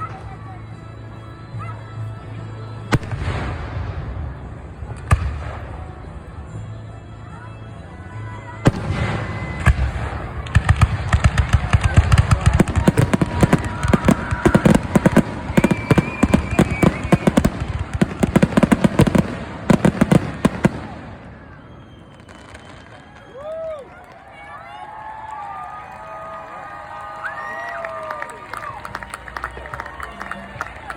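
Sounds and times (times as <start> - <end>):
fireworks banging and crackling: 2.9 - 6.2, 8.6 - 23.8.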